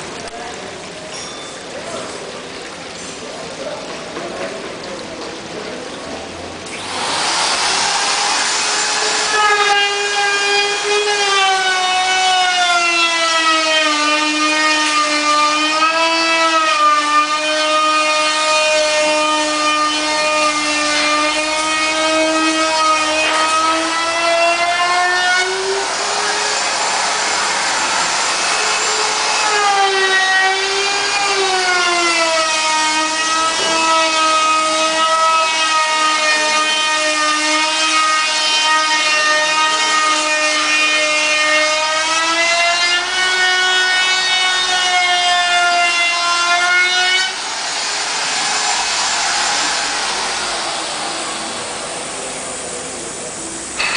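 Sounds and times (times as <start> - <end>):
loud droning whine: 6.4 - 53.9
hissing rush: 6.7 - 9.3, 25.5 - 29.6, 47.3 - 53.9.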